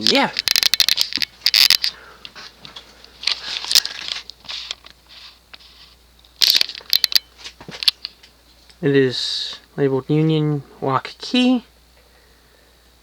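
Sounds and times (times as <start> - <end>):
crinkling rustling handling noise: 0.0 - 8.7.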